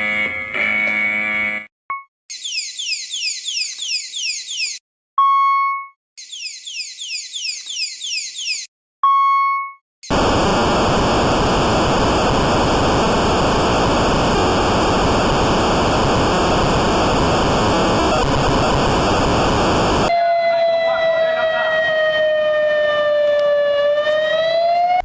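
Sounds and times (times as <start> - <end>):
high falling alarm sweeps: 10.1 - 20.1
loud steady static hiss: 10.1 - 20.1.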